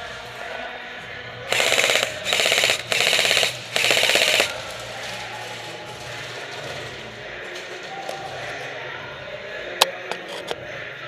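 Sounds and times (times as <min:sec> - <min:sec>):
airsoft rifle full-auto bursts: 0:01.5 - 0:05.2.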